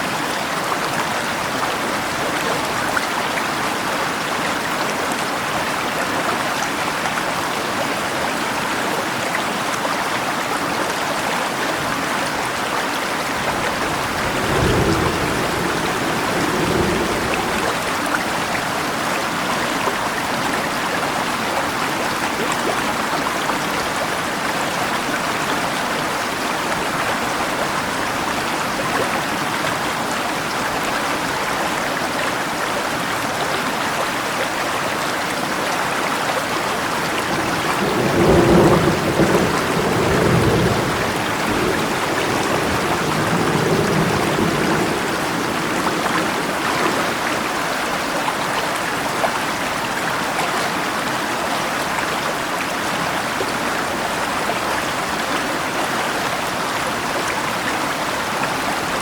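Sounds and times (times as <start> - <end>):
rainfall: 0.0 - 59.0
river flowing: 0.0 - 59.0
thunder rumbling: 13.3 - 18.8, 36.8 - 47.5.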